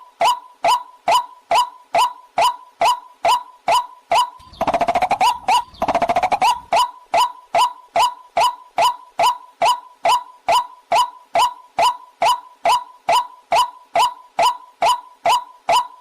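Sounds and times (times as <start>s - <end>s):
waterhen calls: 4.2s - 9.0s.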